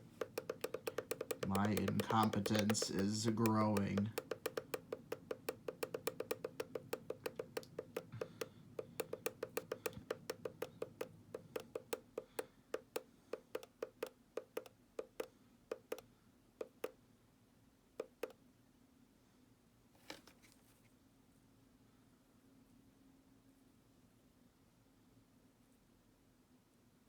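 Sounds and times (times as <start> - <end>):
alarm clock button clicks: 0.2 - 16.0.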